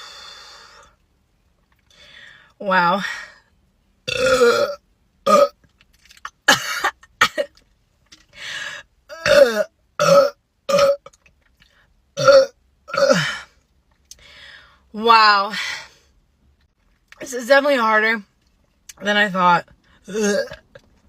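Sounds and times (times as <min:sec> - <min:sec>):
woman burping: 0:04.1 - 0:05.6, 0:09.1 - 0:11.1, 0:12.2 - 0:13.5, 0:20.1 - 0:20.9.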